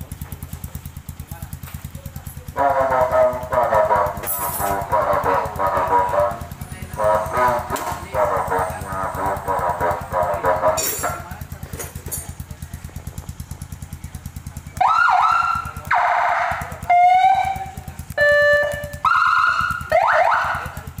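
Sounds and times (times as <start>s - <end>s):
motorcycle idling: 0.0s - 21.0s
siren bursts in different tones: 14.8s - 20.8s.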